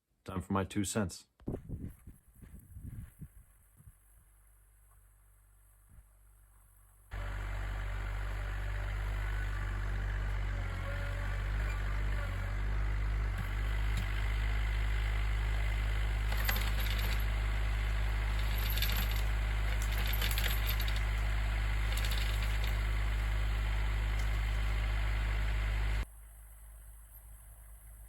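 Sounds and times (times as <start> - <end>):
tractor engine droning: 7.1 - 28.0
metallic clinks and rattles: 16.2 - 23.0.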